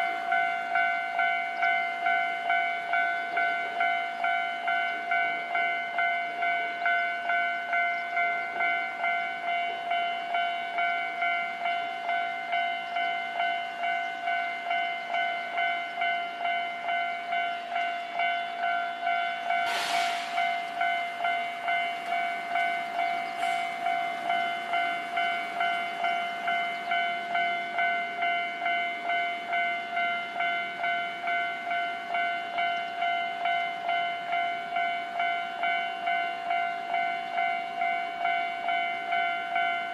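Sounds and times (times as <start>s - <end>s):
short hiss: 19.7s - 20.8s.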